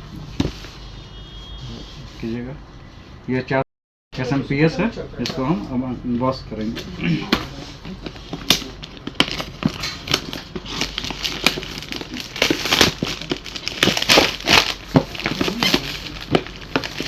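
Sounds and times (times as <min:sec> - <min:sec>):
plastic wrap and cardboard crinkling: 0:07.5 - 0:17.0.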